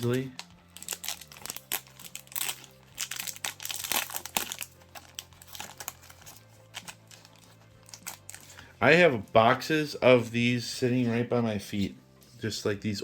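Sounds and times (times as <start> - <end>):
card pack wrapper crinkling: 0.0 - 8.6
faint background music: 0.0 - 13.0.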